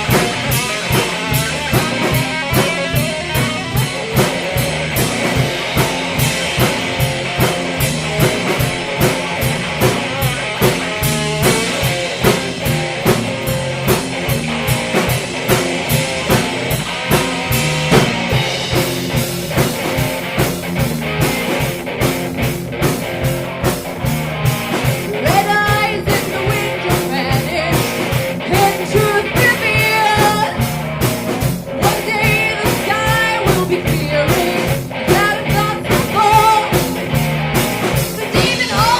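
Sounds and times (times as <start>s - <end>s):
drum kit beat: 0.0s - 38.9s
electric guitar: 0.0s - 38.9s
person singing: 25.1s - 30.6s, 31.8s - 37.0s, 38.2s - 38.9s.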